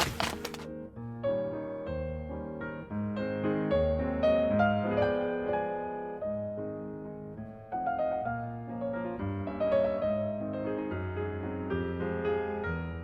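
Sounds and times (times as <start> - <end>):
slow piano music: 1.1 - 13.0.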